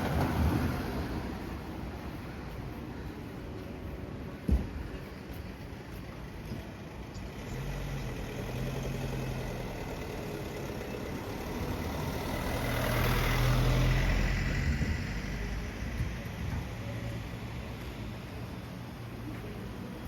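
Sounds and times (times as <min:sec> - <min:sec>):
vehicle engine passing: 0:07.3 - 0:15.8.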